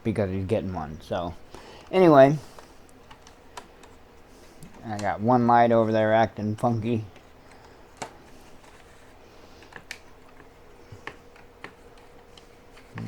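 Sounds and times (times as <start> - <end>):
faint steady hum: 0.0 - 13.0
plastic parts clicking and tapping: 1.6 - 4.0, 4.6 - 5.2, 6.5 - 13.0.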